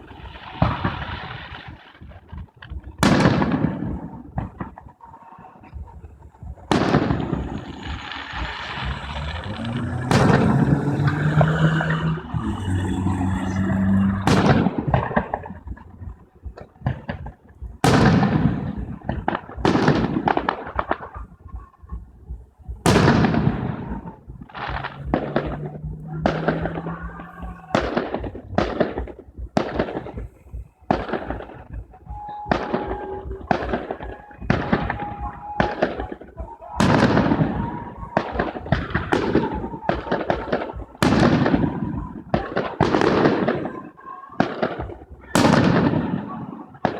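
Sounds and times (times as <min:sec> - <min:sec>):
fireworks bursting and crackling: 0:00.0 - 0:46.9
heavy firework booms: 0:03.0 - 0:04.8, 0:06.5 - 0:11.5, 0:12.2 - 0:15.8, 0:16.8 - 0:21.3, 0:22.8 - 0:43.7.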